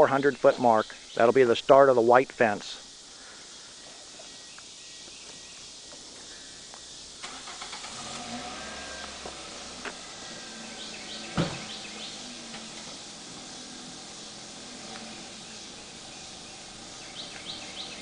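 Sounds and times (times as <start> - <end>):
car engine starting and running: 7.1 - 18.0
sharp thump: 11.3 - 11.8.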